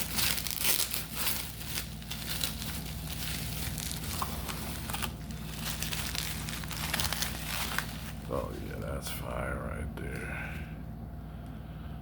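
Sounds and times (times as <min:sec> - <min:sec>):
wrapper crinkling and tearing: 0:00.0 - 0:08.6.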